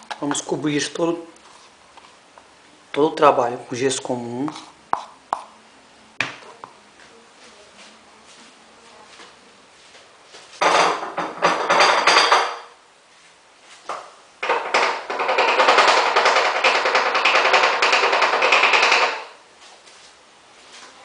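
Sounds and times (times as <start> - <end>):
vibrator rattling metal flask: 14.4 - 19.4.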